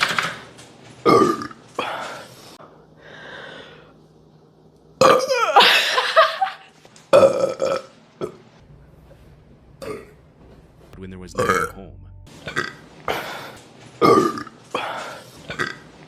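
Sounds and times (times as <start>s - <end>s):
person burping: 1.1s - 1.6s, 5.0s - 5.8s, 7.2s - 8.4s, 9.8s - 10.2s, 11.4s - 13.3s, 14.0s - 14.6s, 15.5s - 15.9s.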